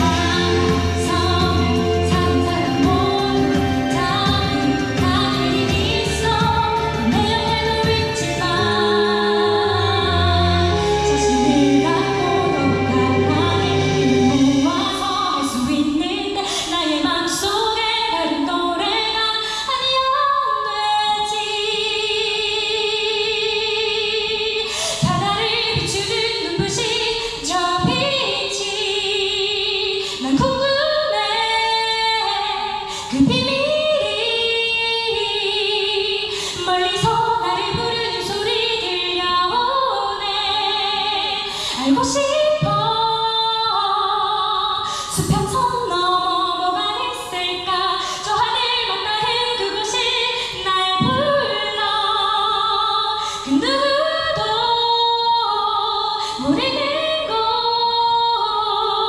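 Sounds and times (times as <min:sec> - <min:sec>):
musical accompaniment with beat: 0:00.0 - 0:15.8
woman singing a ballad: 0:00.0 - 0:59.0.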